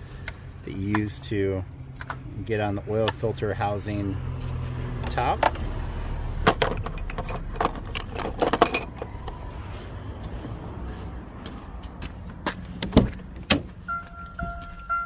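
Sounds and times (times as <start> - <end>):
small metal objects clinking: 6.4 - 9.4.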